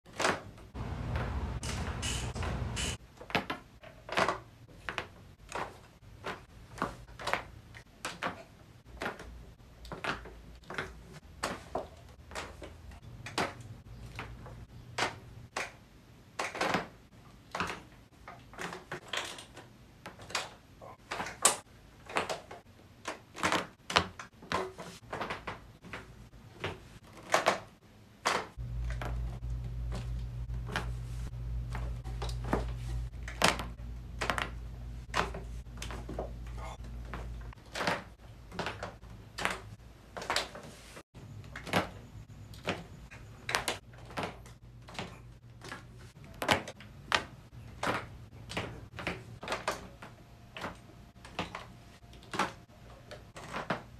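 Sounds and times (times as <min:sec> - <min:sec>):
back joints cracking: 0:00.1 - 0:15.8, 0:31.6 - 0:40.7, 0:41.5 - 0:53.9.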